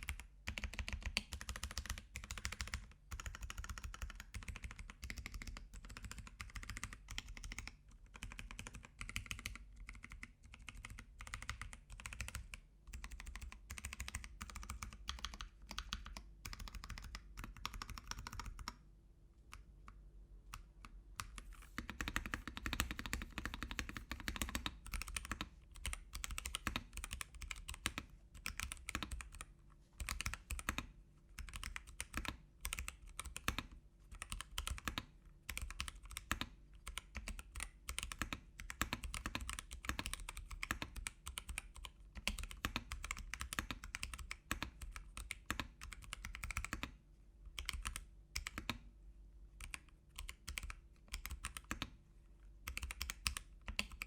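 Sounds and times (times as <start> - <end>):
typing on mechanical keyboard: 0.0 - 18.8, 20.5 - 48.9, 49.6 - 52.0, 52.6 - 54.0.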